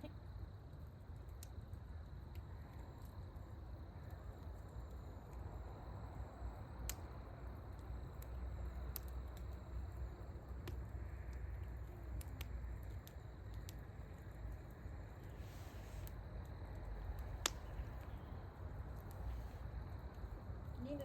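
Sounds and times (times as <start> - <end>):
low steady rumble: 0.0 - 21.0
wood bonfire crackling: 0.0 - 21.0
sharp pops: 17.2 - 18.2.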